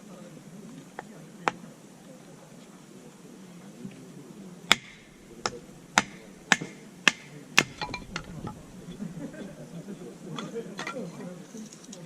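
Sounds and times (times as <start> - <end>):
sharp chopping strikes: 4.7 - 9.7.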